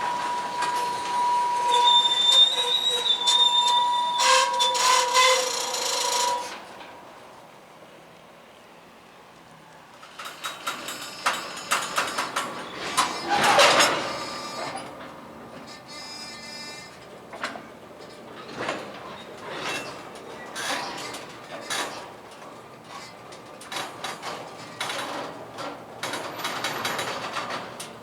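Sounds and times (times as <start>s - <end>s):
high metallic squeal: 0.0s - 6.8s, 12.6s - 14.8s
metallic clanks from train wheels: 0.0s - 7.3s, 10.0s - 28.0s.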